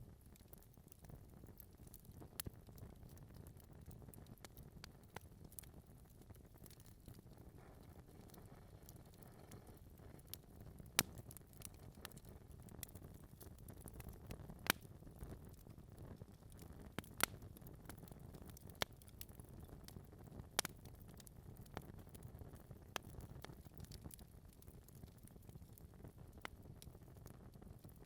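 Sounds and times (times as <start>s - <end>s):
low rumble of flames: 0.0s - 28.0s
logs crackling and popping: 0.1s - 28.0s.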